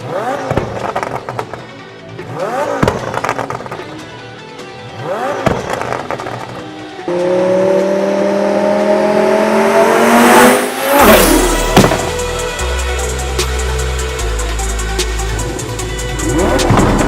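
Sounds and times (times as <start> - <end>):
background music with deep bass: 0.0 - 17.0
sports car engine accelerating: 0.0 - 17.0
loud rushing sweep: 7.2 - 12.5.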